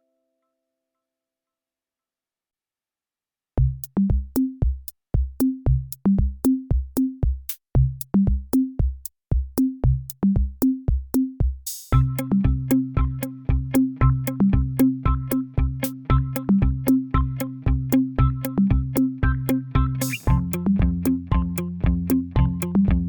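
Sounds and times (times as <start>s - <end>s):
drum-machine beat: 3.6s - 23.0s
synth and bass notes: 11.9s - 23.0s.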